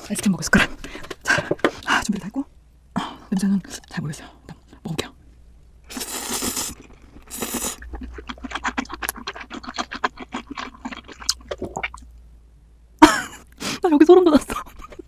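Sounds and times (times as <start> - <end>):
fast wet chewing: 5.9 - 12.0
slurping noodles: 5.9 - 12.0.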